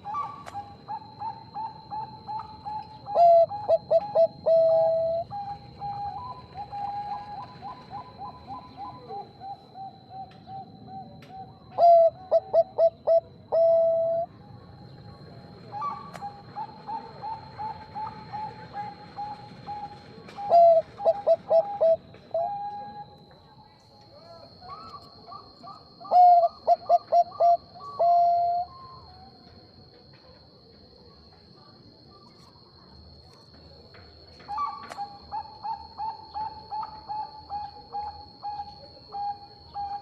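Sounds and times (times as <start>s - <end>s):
dove bubbling coos: 0.0s - 14.3s, 15.7s - 23.1s, 24.6s - 29.2s, 34.5s - 40.0s.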